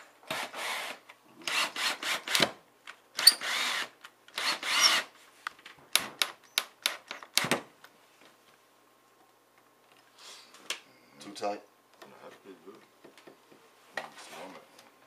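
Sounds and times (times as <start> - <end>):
power drill driving screws: 0.3 - 2.5, 3.2 - 5.1
sharp clicks and knocks: 5.5 - 7.7.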